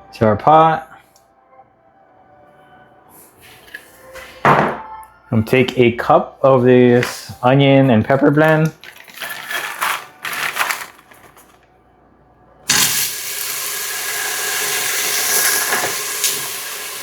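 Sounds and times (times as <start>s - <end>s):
vegetables sizzling in hot oil: 12.7s - 17.0s.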